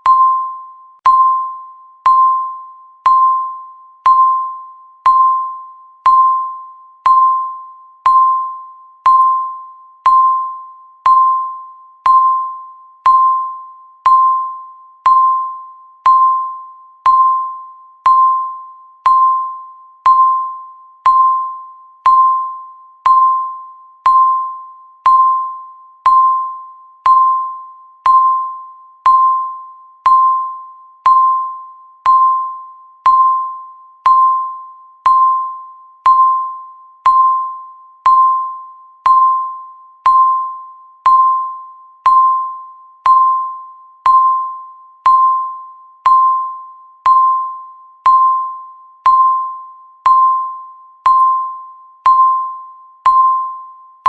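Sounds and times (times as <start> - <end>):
countdown timer beeps: 0.0 - 54.0.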